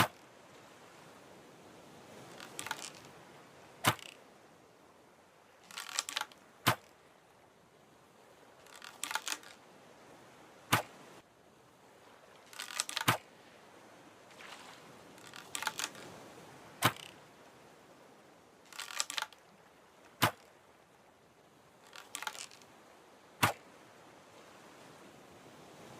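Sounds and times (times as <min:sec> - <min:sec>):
bowstring snapping: 0:00.0 - 0:00.2, 0:02.3 - 0:03.1, 0:03.8 - 0:04.2, 0:05.6 - 0:07.0, 0:08.6 - 0:09.6, 0:10.7 - 0:11.0, 0:12.4 - 0:13.3, 0:15.2 - 0:16.1, 0:16.8 - 0:17.2, 0:18.7 - 0:19.4, 0:20.1 - 0:20.5, 0:21.8 - 0:22.6, 0:23.4 - 0:23.7
bow creaking: 0:00.0 - 0:00.3, 0:02.0 - 0:04.5, 0:05.5 - 0:07.2, 0:08.2 - 0:09.8, 0:10.7 - 0:11.2, 0:12.2 - 0:13.3, 0:14.3 - 0:18.0, 0:18.6 - 0:20.8, 0:21.7 - 0:22.8, 0:23.4 - 0:23.8.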